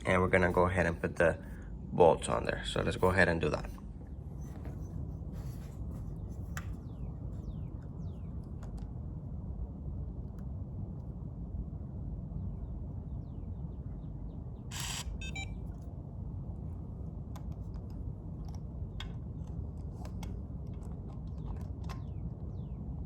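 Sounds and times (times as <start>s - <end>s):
door lock electronic beep: 14.7s - 15.6s.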